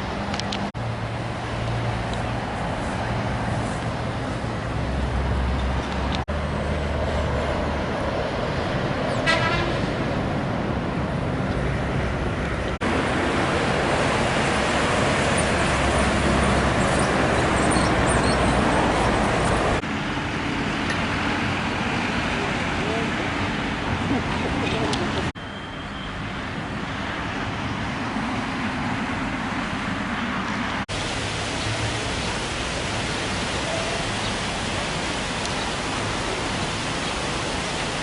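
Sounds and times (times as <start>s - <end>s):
road traffic: 0.0s - 38.0s
short horn toot: 9.2s - 9.9s.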